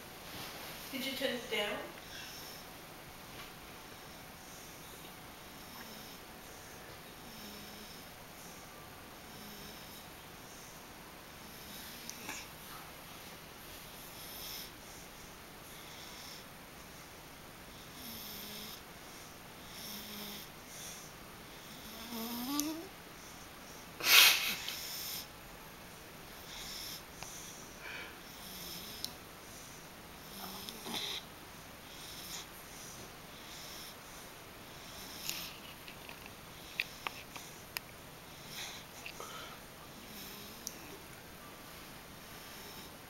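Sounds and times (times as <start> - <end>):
pet snoring softly: 3.9 - 10.8, 14.0 - 15.1, 15.7 - 17.1, 17.7 - 23.5, 26.4 - 35.8, 36.5 - 41.0, 42.2 - 43.0.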